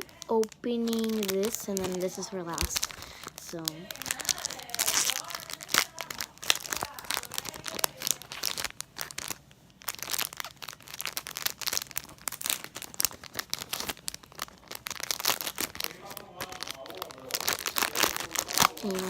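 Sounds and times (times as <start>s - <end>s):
packaging crinkling: 0.0s - 19.0s.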